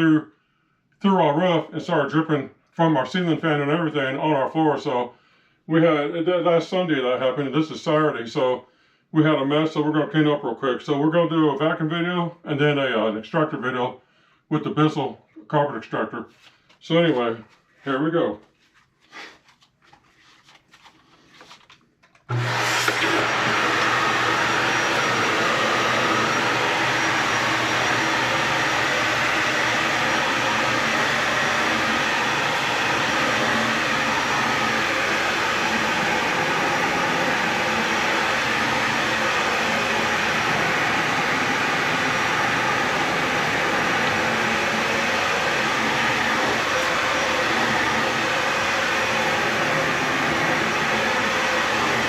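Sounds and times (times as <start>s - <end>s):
vacuum cleaner running on carpet: 22.3s - 52.0s.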